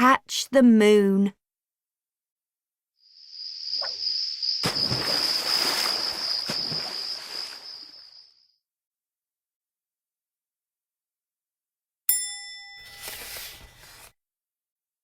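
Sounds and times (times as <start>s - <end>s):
crickets trilling: 3.0s - 8.5s
water splashing: 4.6s - 8.1s.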